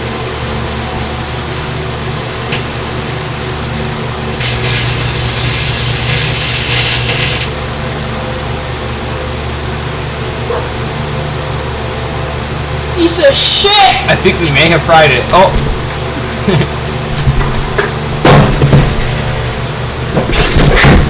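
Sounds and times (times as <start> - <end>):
crackling buzzing sparks: 0.0 - 8.6, 14.2 - 21.0
microwave oven humming: 0.0 - 21.0.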